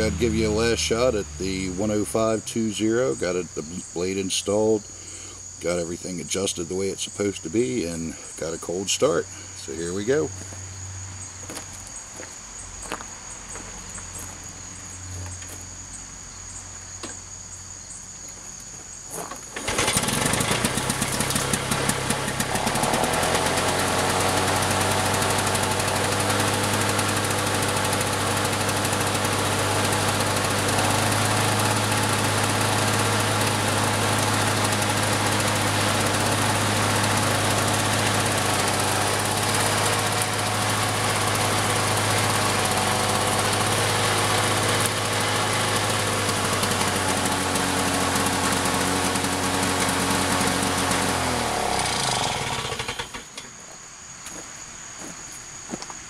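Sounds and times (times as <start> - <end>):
lawn mower engine running: 0.0 - 10.5, 19.2 - 53.6
crickets chirping: 0.1 - 20.0, 52.6 - 56.0.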